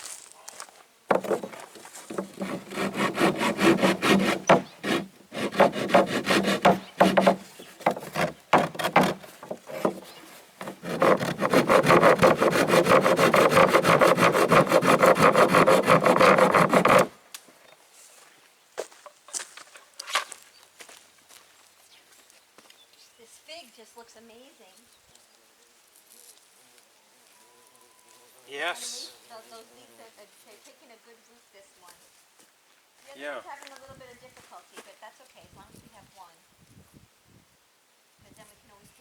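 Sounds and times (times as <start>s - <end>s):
wood being sawn: 1.1s - 17.1s.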